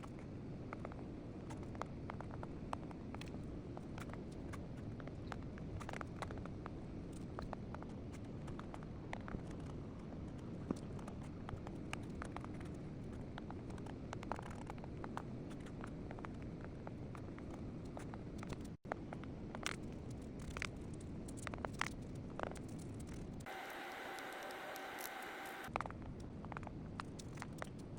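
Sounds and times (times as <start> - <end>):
steady hiss: 23.5 - 25.7.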